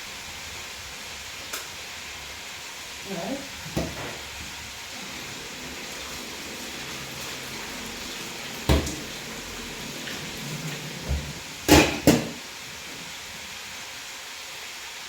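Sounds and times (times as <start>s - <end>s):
sharp knocks at stove: 8.7s - 9.1s, 11.1s - 12.4s.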